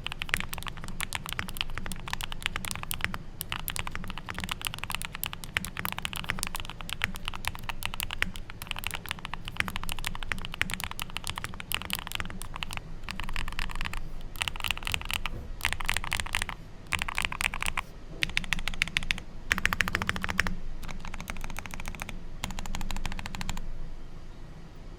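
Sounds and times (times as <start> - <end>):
fast mechanical keyboard typing: 0.0 - 23.6.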